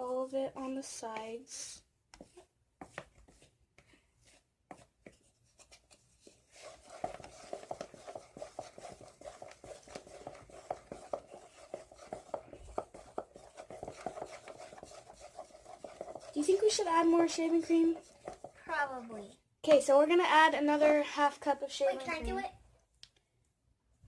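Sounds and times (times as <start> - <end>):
utensil scraping slime in bowl: 0.0 - 19.2.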